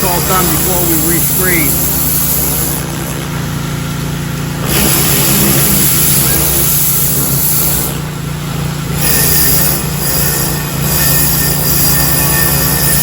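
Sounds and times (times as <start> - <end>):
water spray hissing: 0.0 - 2.9
pressure washer running: 0.0 - 13.0.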